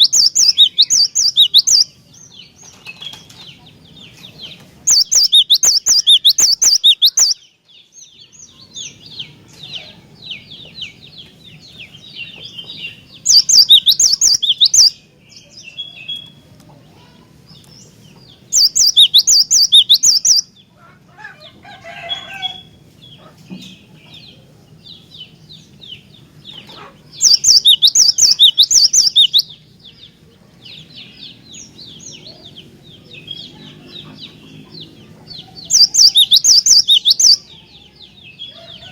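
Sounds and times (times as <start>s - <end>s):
bird singing rapid high notes: 0.0s - 1.9s, 4.9s - 7.5s, 12.9s - 15.0s, 18.5s - 20.5s, 27.2s - 29.6s, 35.6s - 37.5s
soft bird twittering: 0.0s - 20.6s, 21.8s - 38.9s.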